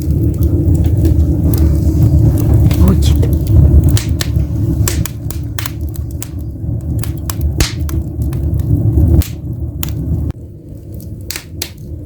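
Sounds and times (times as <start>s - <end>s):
wood fire crackling: 0.0s - 12.0s.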